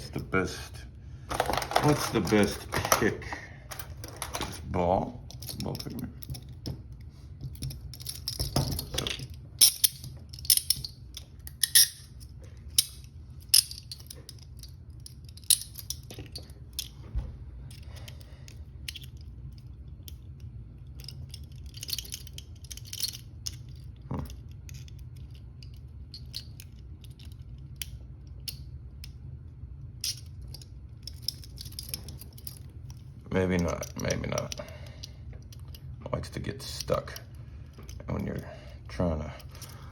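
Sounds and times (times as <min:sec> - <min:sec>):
steady low hum: 0:00.0 - 0:39.9
cuff and chain rattling: 0:07.4 - 0:17.0.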